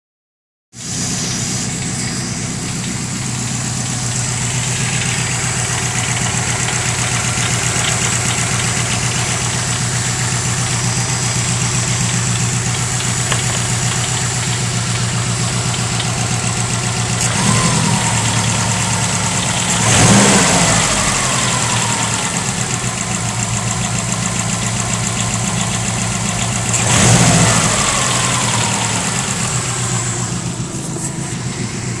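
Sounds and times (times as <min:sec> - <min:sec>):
car engine idling with metallic rattle: 0:00.8 - 0:32.0
engine revving: 0:00.8 - 0:32.0.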